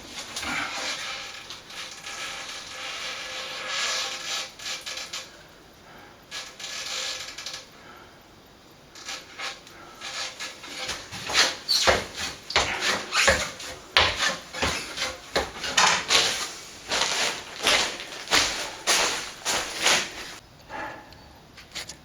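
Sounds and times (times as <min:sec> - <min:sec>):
hand tool scraping plaster: 0:00.0 - 0:05.3, 0:09.1 - 0:20.4.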